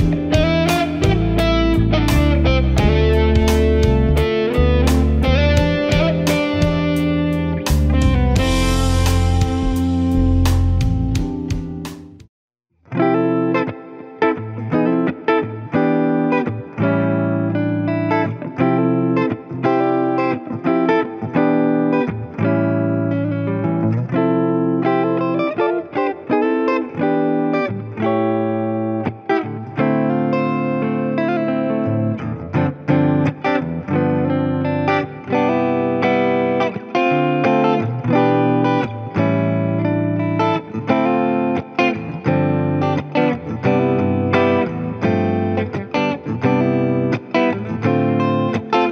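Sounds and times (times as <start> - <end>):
backing track: 0.0 - 12.3
electric guitar playing chords: 0.0 - 48.9.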